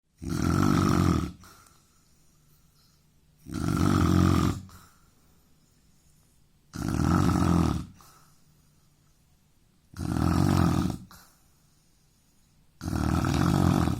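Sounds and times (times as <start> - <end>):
man snoring loudly: 0.2 - 1.4, 3.4 - 4.7, 6.8 - 8.0, 10.0 - 11.2, 12.8 - 13.9
quiet breathing: 1.2 - 3.5, 4.1 - 6.8, 7.7 - 9.9, 10.8 - 12.9.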